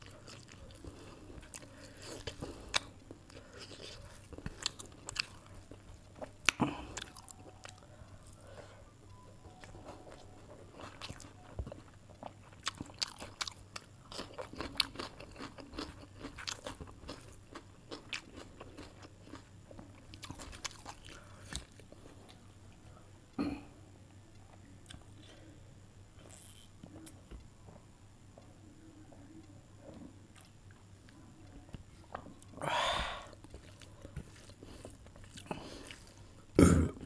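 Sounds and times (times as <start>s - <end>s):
person chewing crunchy food: 0.0s - 8.4s, 9.6s - 22.4s, 26.2s - 27.2s, 32.1s - 36.9s.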